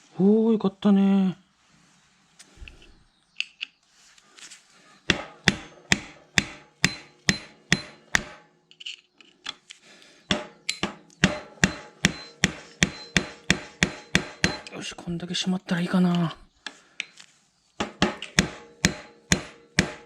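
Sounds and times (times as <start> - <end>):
hammer blows with metallic ring: 5.1 - 8.5, 10.3 - 14.8, 17.9 - 20.0.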